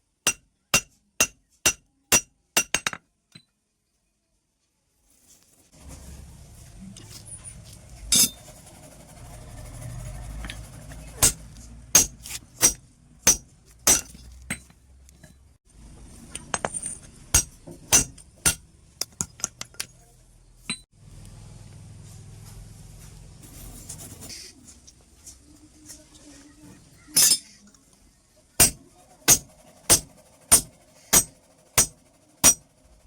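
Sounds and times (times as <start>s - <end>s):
metal parts clinking on metal: 16.3s - 20.0s.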